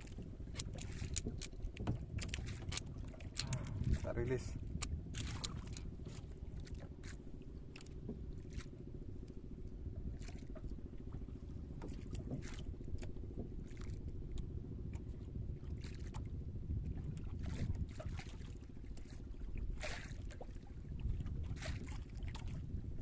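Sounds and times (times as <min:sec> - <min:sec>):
boat engine rumbling: 0:00.0 - 0:23.0.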